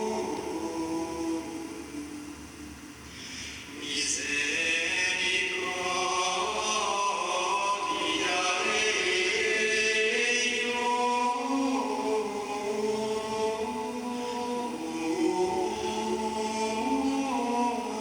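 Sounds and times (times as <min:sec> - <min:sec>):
male choir chanting: 0:00.0 - 0:02.3, 0:03.7 - 0:18.0.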